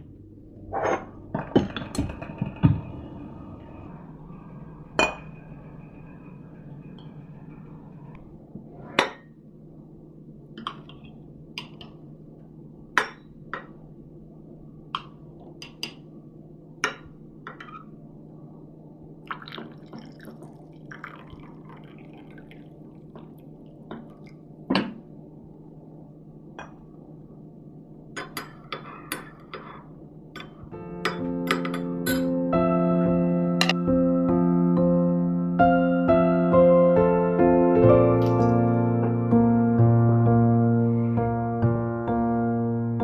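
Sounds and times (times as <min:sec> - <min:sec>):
low hum: 0:00.0 - 0:37.0
liquid splash: 0:19.3 - 0:23.5
glass clinking: 0:30.4 - 0:32.3.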